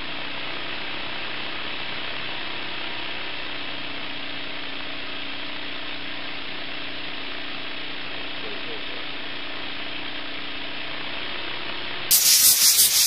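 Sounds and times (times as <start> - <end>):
small steam engine running: 12.1 - 13.0
steady hiss: 12.1 - 13.0.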